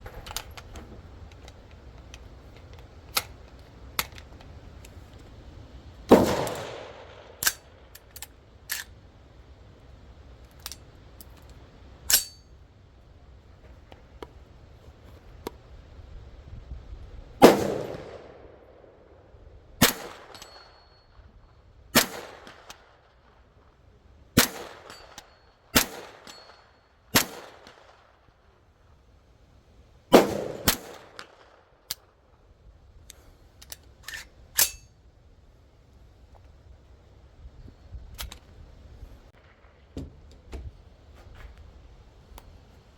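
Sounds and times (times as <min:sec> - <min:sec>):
rifle handling clicks and knocks: 0:00.0 - 0:09.1, 0:10.1 - 0:12.6, 0:13.4 - 0:15.9, 0:33.0 - 0:35.0, 0:38.0 - 0:38.6, 0:39.3 - 0:42.8
rifle shots echoing: 0:06.1 - 0:07.9, 0:17.4 - 0:19.0, 0:19.8 - 0:20.6, 0:22.0 - 0:22.9, 0:24.4 - 0:25.2, 0:25.8 - 0:28.1, 0:30.1 - 0:31.6.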